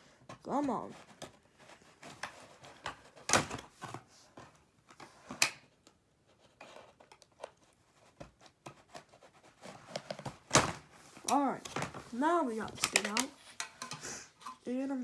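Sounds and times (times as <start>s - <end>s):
plastic packaging rustling: 9.6s - 15.0s.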